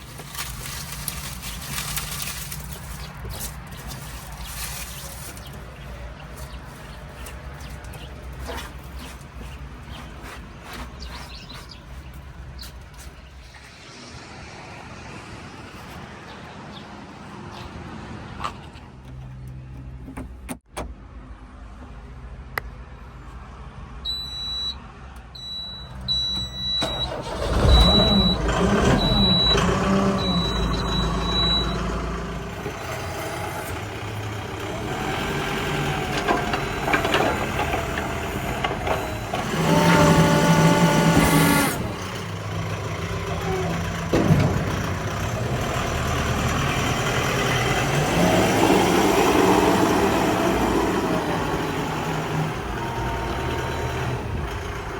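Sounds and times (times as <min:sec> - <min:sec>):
diesel engine running and revving: 0:00.0 - 0:13.0, 0:26.0 - 0:54.9
reversing alarm beeping: 0:24.0 - 0:24.8, 0:25.4 - 0:32.1.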